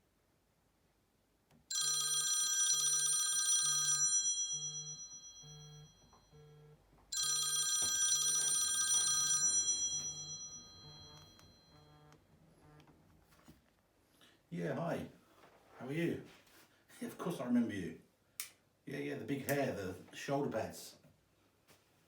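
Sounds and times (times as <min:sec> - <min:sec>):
telephone bell ringing: 0:01.7 - 0:12.2.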